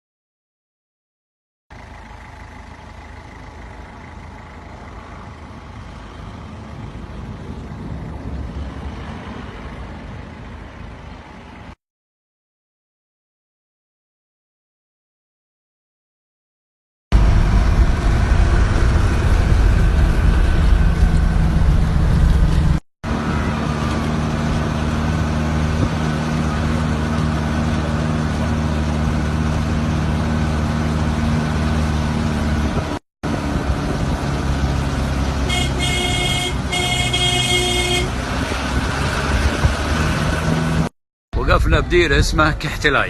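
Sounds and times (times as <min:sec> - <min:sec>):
minibus engine running: 0:01.7 - 0:11.8, 0:17.1 - 0:43.0
horn honking short blasts: 0:35.4 - 0:38.2.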